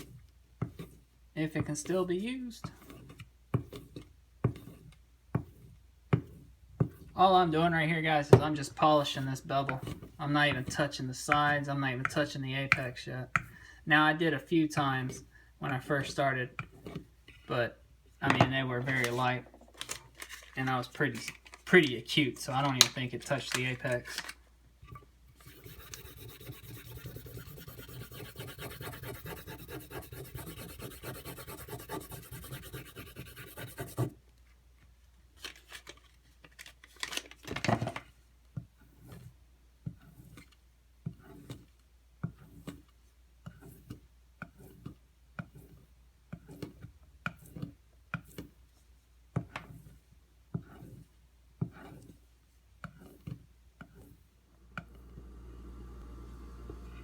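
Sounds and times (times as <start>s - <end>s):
knife scraping on whetstone: 25.4s - 34.1s.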